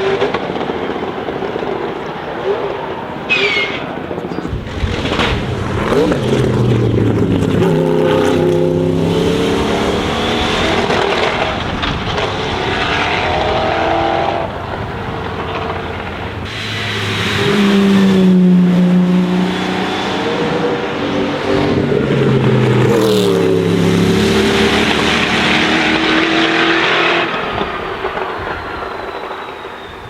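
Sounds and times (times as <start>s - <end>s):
racing engine through gear changes: 4.4s - 28.2s.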